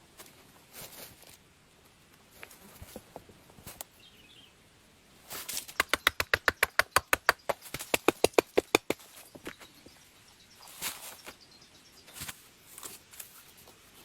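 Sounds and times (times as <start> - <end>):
rapid sharp taps: 5.8 - 9.5.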